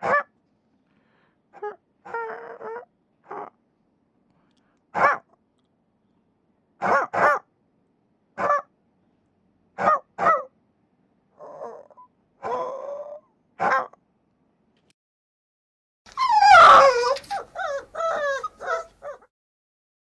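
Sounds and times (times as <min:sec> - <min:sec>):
animal high-pitched calls: 0:16.1 - 0:19.2.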